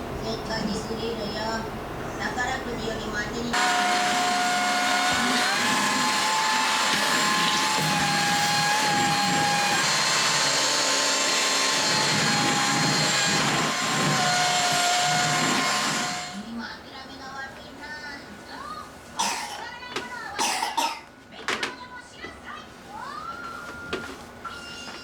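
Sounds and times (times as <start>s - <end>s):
vacuum cleaner motor whine: 3.5s - 16.5s.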